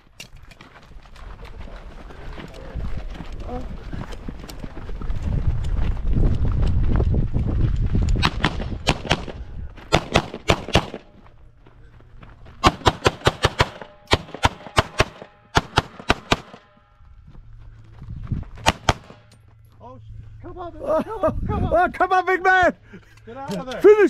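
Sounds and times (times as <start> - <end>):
pistol shots: 8.2 - 11.1, 12.6 - 16.7, 18.6 - 19.3.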